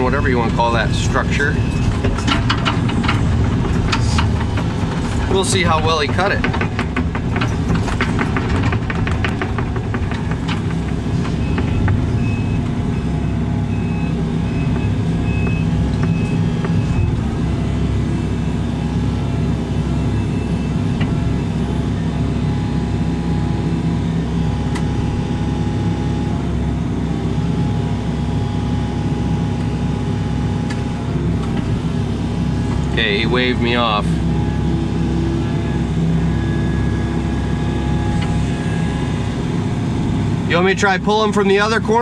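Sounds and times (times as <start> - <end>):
excavator diesel engine running: 0.0 - 42.0
sharp knocks: 0.1 - 12.9.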